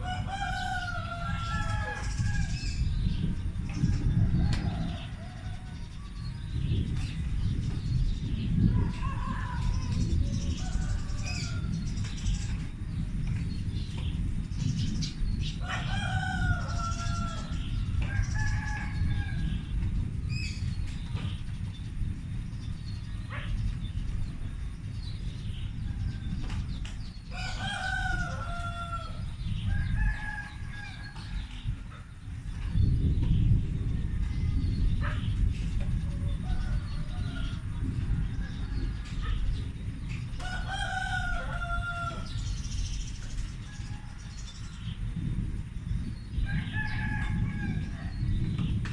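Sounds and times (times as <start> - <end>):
rooster crowing: 0.0 - 2.8, 15.6 - 19.7, 27.3 - 31.4, 40.4 - 42.4, 46.5 - 48.2
low continuous rumble: 0.0 - 48.9.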